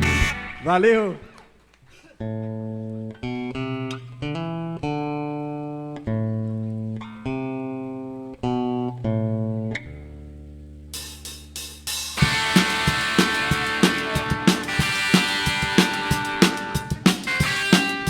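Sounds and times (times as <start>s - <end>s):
low bass note: 0.0s - 0.7s
electric guitar single notes: 0.0s - 1.4s, 12.2s - 18.0s
quick drum or cymbal hits: 11.0s - 18.0s.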